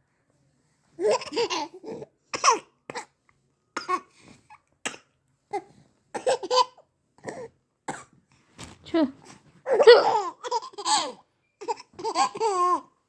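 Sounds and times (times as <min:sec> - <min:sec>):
child hiccuping: 0:09.7 - 0:10.3
child laughing: 0:09.7 - 0:11.1.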